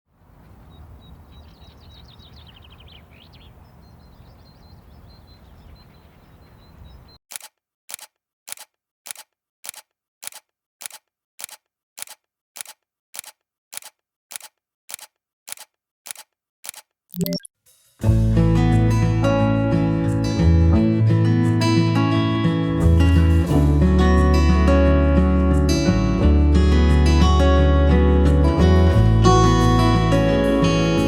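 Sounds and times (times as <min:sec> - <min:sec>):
sharp clicks: 0:07.3 - 0:17.5
faint high chirping trills: 0:17.2 - 0:17.5.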